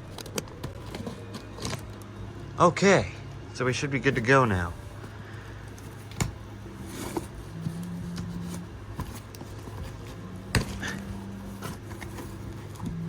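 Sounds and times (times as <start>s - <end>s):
cardboard box handled and opened: 0.0s - 2.3s, 4.1s - 13.0s
low hum: 0.0s - 13.0s.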